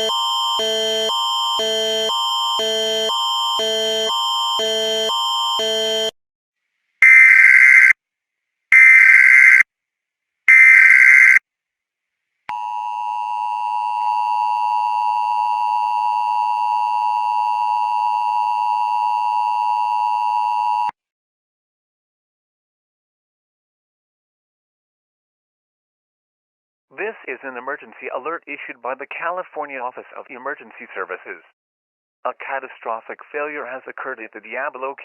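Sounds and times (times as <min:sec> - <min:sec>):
alternating-tone sequence: 0:00.0 - 0:06.1
two-tone attention signal: 0:00.0 - 0:06.2.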